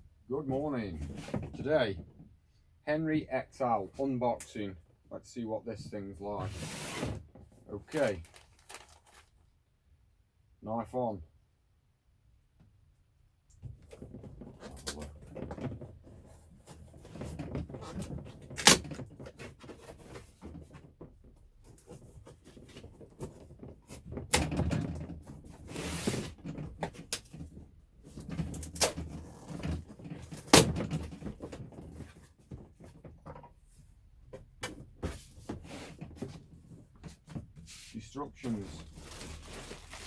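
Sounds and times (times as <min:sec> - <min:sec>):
rustling and scraping: 0:05.7 - 0:09.4, 0:13.9 - 0:40.0
cardboard packaging handled: 0:07.8 - 0:09.4, 0:38.5 - 0:40.0.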